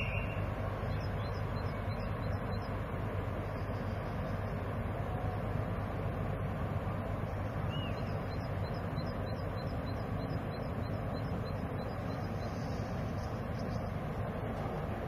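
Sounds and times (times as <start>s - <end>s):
ship engines humming: 0.0s - 15.0s.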